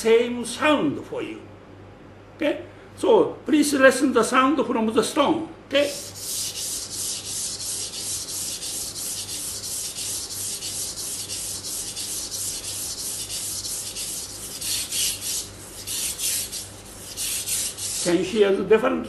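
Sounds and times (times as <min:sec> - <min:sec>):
knife rasping on whetstone: 0:05.9 - 0:18.2.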